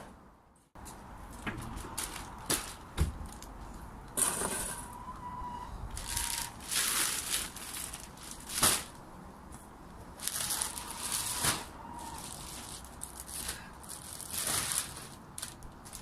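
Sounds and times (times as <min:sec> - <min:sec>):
shovel scraping and rustling: 0:04.2 - 0:04.9, 0:06.0 - 0:09.0, 0:10.2 - 0:16.0.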